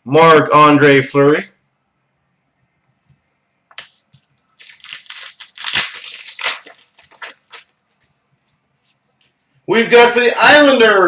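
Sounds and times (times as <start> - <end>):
plastic packaging crinkling: 3.7 - 8.2.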